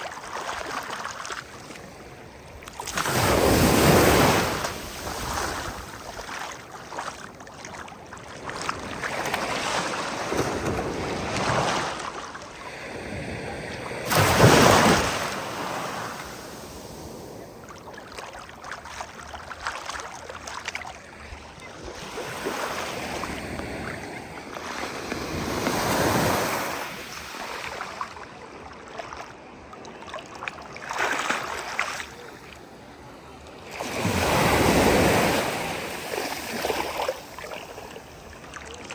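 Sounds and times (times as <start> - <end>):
sea waves breaking on shore: 0.0 - 38.9.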